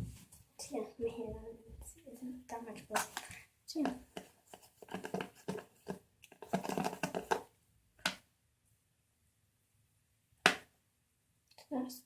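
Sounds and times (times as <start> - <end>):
slime squelching and crackling: 2.7 - 7.5.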